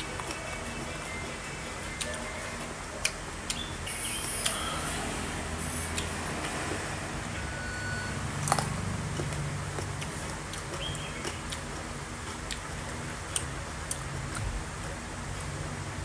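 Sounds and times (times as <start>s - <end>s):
low hum: 0.0s - 16.0s.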